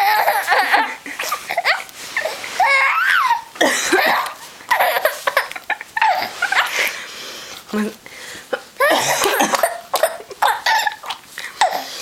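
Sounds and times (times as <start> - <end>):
baby laughing: 0.0 - 6.9, 8.6 - 12.0
adult coughing: 3.6 - 4.4, 8.5 - 10.8.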